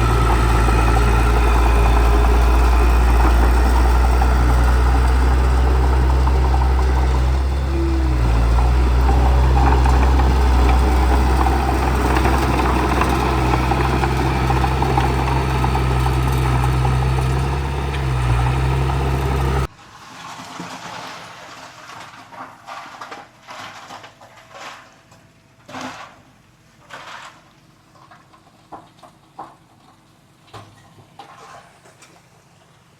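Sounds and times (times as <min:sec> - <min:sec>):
bulldozer diesel engine droning: 0:00.0 - 0:19.7.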